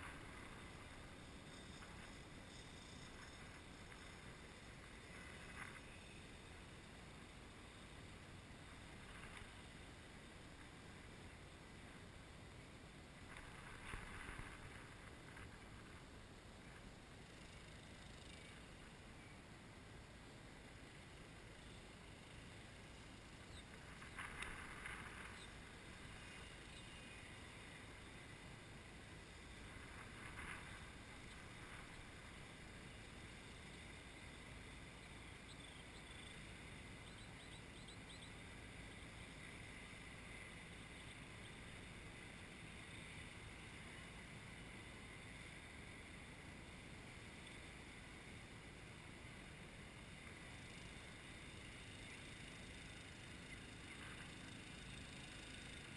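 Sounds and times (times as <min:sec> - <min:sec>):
faint outdoor ambience: 0:00.0 - 0:55.9
faint high chirps: 0:34.9 - 0:38.4.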